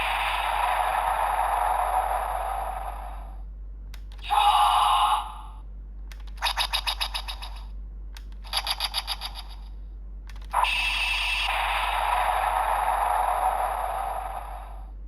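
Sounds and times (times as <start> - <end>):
continuous synthesized sound effect: 0.0 - 3.4, 8.4 - 9.6, 10.6 - 15.0
toy click: 6.1 - 9.7
rapid pulsing electronic chime: 10.6 - 15.0.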